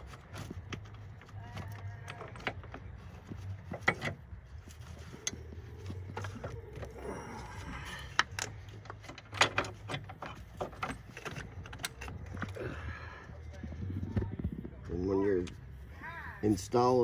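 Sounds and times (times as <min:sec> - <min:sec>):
metal bracket clicks and knocks: 0:00.0 - 0:07.0, 0:07.6 - 0:12.6
low background hum: 0:00.0 - 0:17.0.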